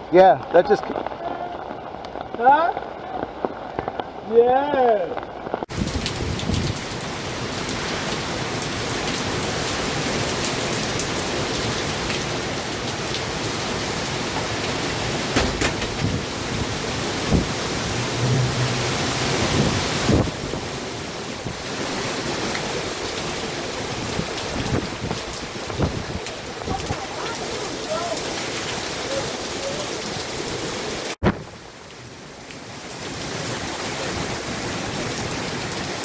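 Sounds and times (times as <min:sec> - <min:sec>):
heavy rain and wind: 0:00.0 - 0:36.0
sharp knocks: 0:15.4 - 0:16.6.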